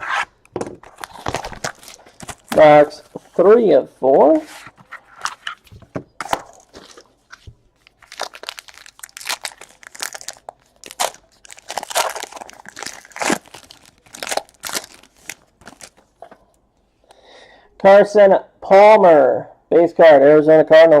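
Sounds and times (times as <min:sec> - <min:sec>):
plastic wrapping crinkling and tearing: 0:00.8 - 0:03.2, 0:04.7 - 0:16.3.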